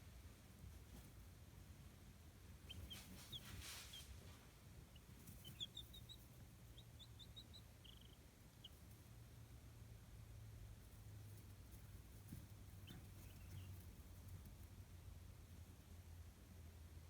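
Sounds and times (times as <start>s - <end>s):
baby chicks peeping: 2.2s - 9.7s, 10.8s - 16.0s.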